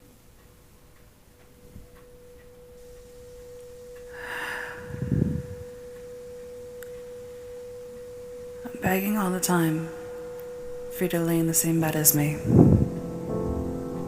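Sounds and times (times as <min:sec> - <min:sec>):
steady high hum: 0:00.0 - 0:14.0
breathy rush: 0:03.8 - 0:06.0.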